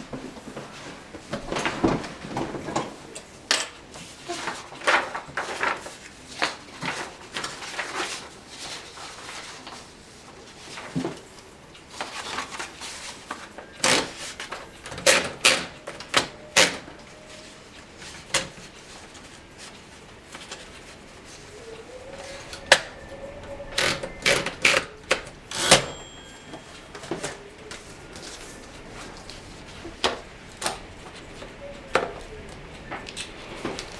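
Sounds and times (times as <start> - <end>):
brief ringing tone: 25.5 - 27.8.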